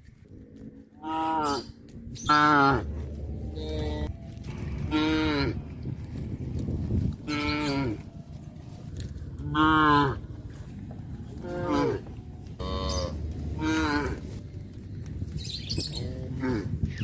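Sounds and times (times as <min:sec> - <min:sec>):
cattle mooing: 0:02.3 - 0:05.7, 0:07.2 - 0:08.1, 0:09.4 - 0:10.4, 0:11.4 - 0:14.4.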